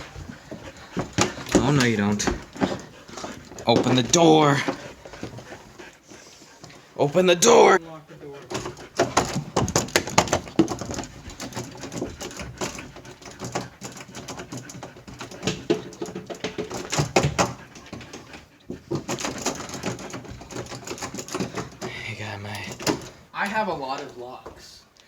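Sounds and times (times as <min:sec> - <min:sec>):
clicks knocks and rattles at door: 0:00.0 - 0:05.6, 0:08.5 - 0:21.9, 0:22.5 - 0:23.3.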